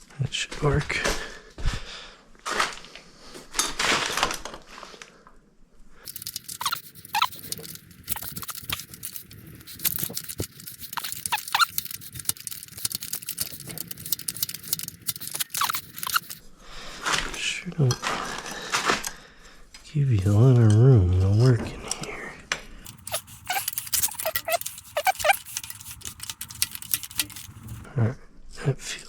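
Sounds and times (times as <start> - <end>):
hand tool clicking and scraping metal: 6.1 - 16.4, 22.8 - 27.9.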